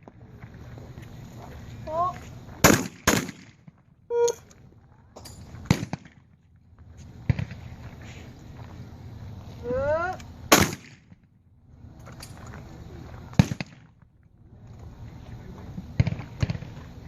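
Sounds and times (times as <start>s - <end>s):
shotgun shots: 2.6s - 3.7s, 5.6s - 6.2s, 10.5s - 11.2s, 13.3s - 13.9s.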